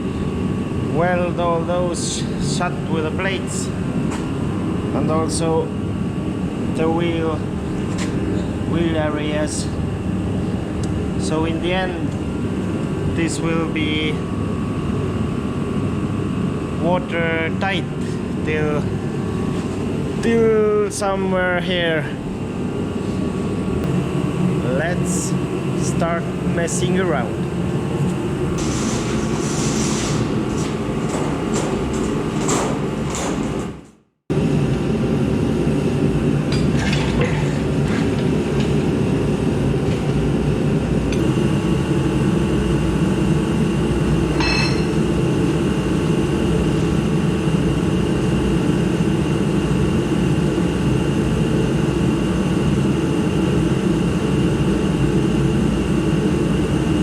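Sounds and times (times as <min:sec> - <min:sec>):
heater whooshing: 0:28.2 - 0:33.6.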